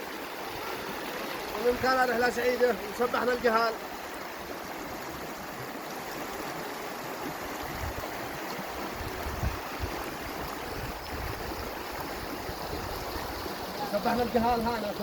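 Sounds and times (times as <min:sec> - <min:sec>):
rushing waterfall: 0:00.0 - 0:15.0.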